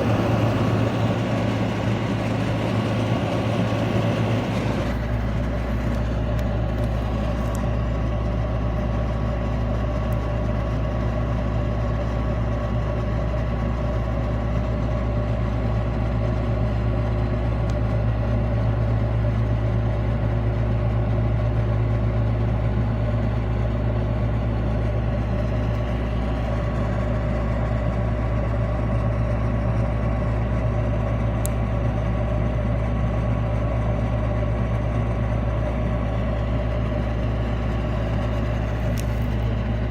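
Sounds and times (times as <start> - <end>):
air conditioner compressor hum: 0.0 - 7.8
fan whirring: 0.0 - 7.8.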